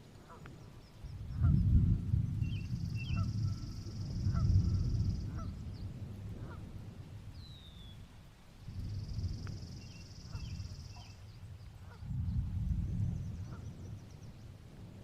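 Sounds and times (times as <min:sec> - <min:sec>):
low rumble: 0:01.1 - 0:07.5, 0:08.7 - 0:15.0
birds calling and chirping: 0:02.4 - 0:06.0, 0:08.9 - 0:14.6.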